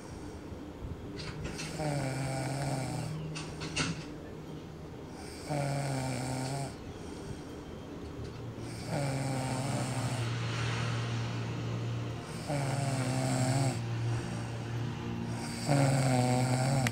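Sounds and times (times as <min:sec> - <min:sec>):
man snoring: 0:01.6 - 0:03.2, 0:05.1 - 0:07.3, 0:08.6 - 0:10.8, 0:12.2 - 0:16.9.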